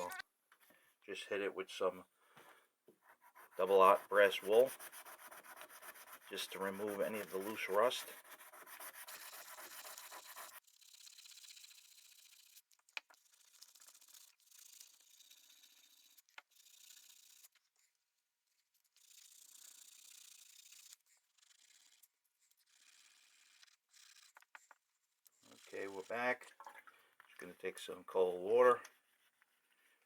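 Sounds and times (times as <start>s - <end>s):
brass wool scrubbing metal blade: 3.1s - 10.6s, 25.4s - 26.5s.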